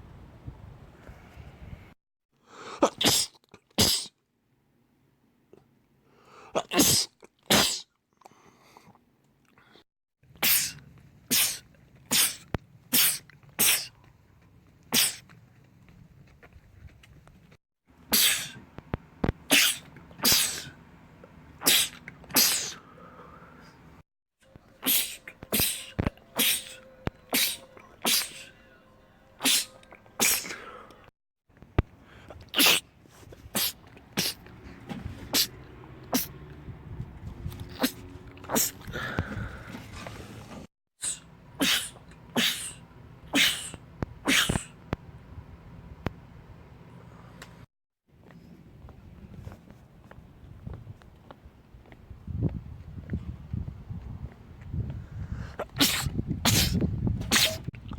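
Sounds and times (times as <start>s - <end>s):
man sneezing: 2.6s - 4.2s, 6.5s - 7.9s, 10.4s - 13.9s, 14.9s - 15.2s, 18.1s - 18.6s, 19.5s - 20.7s, 21.6s - 22.8s, 24.8s - 28.5s, 29.4s - 30.7s, 32.5s - 32.8s, 33.6s - 34.4s, 35.3s - 35.5s, 36.1s - 36.3s, 37.8s - 38.9s, 41.0s - 42.8s, 43.4s - 44.8s, 55.6s - 57.7s.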